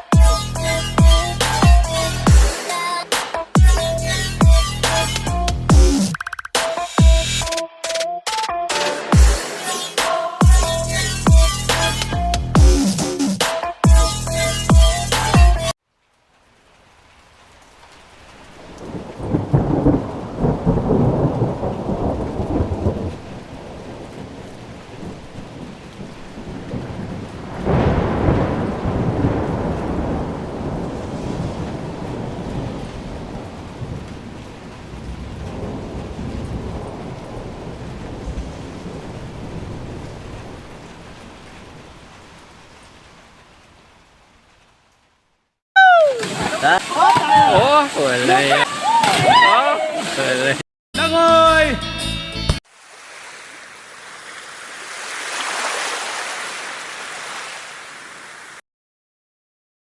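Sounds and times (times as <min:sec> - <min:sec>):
waterfall rushing: 0:45.8 - 0:50.6, 0:52.7 - 0:58.6.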